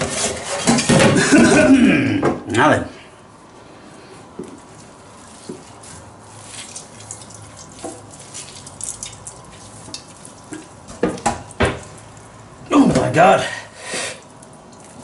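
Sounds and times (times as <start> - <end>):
wet sticky crackling: 4.4 - 13.1, 14.2 - 15.0.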